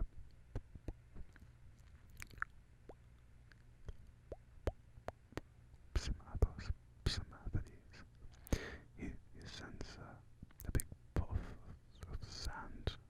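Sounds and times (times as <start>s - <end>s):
faint low hum: 0.0s - 13.0s
wet mouth clicks and pops: 2.1s - 5.5s.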